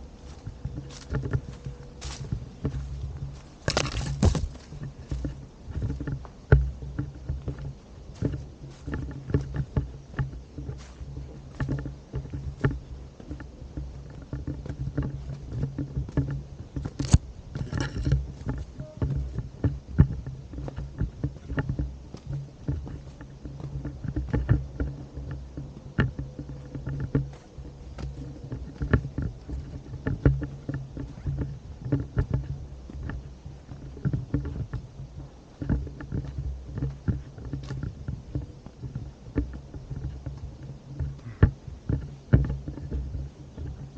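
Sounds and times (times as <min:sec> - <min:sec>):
camera handling rumble: 0:00.2 - 0:32.4.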